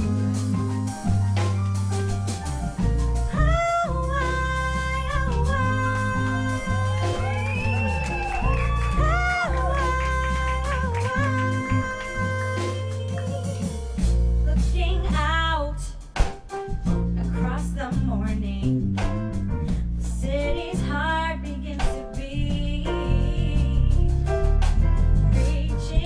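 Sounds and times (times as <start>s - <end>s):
band playing soul-pop ballad: 0.0s - 15.5s, 16.4s - 26.0s.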